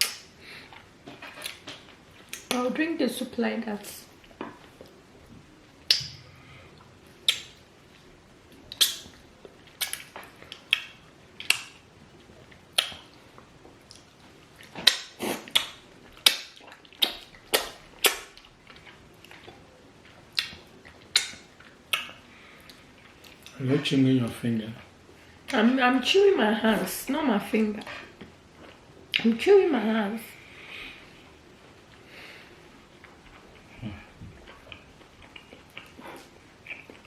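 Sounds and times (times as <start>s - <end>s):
wet lip smacks and sucking: 5.8s - 7.6s, 8.6s - 9.2s, 9.8s - 11.8s, 12.7s - 13.2s, 13.9s - 19.6s, 20.3s - 23.6s.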